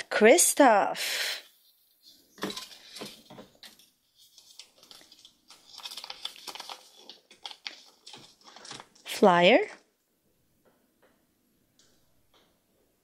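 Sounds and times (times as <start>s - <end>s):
plastic toy clicks and crinkles: 2.4s - 9.1s.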